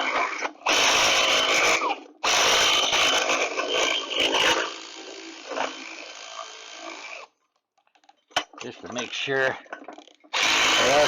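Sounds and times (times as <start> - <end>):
power ratchet running: 10.3 - 11.0.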